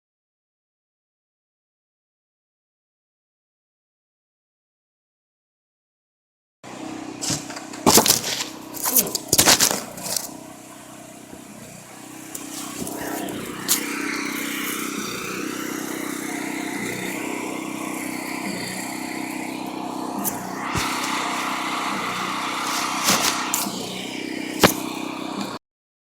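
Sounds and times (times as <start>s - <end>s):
pressure washer engine running: 6.7s - 25.6s
water spray hissing: 8.2s - 25.6s.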